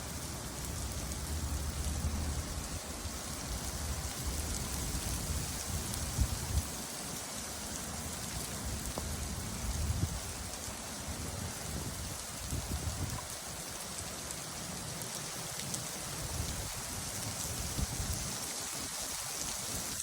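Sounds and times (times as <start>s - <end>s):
rain pattering on surfaces: 0.0s - 20.0s.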